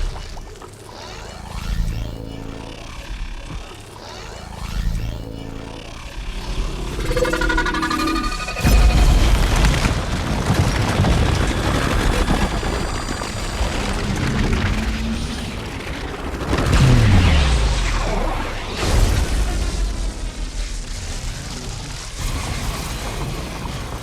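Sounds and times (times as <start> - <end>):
deep falling sweep: 6.3 - 10.5.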